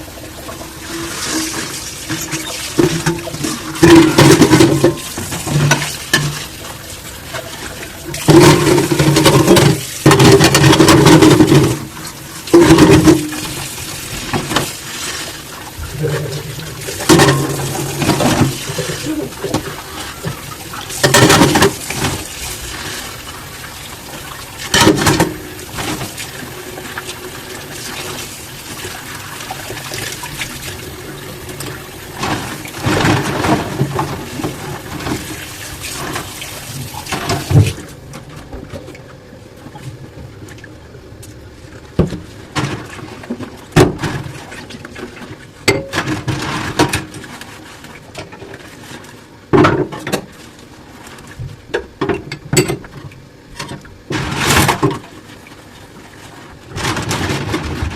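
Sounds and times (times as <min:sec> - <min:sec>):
dishes knocking and clinking: 0:02.3 - 0:06.4.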